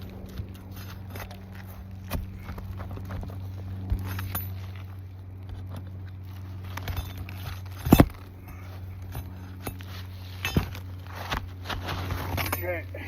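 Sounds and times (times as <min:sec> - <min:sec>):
steady low hum: 0:00.0 - 0:13.0
flat bar prying shingle: 0:06.6 - 0:12.7.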